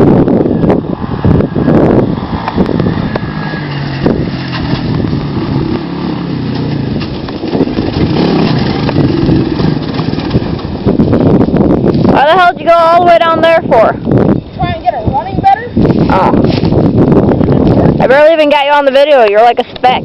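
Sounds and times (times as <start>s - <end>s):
atv engine running: 0.0s - 14.5s
wind on microphone: 0.0s - 20.0s.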